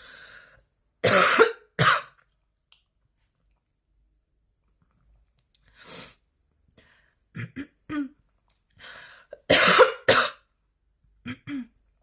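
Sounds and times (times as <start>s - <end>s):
noisy breath: 0.0s - 0.7s, 8.8s - 9.4s
woman coughing: 1.0s - 2.2s, 9.5s - 10.4s.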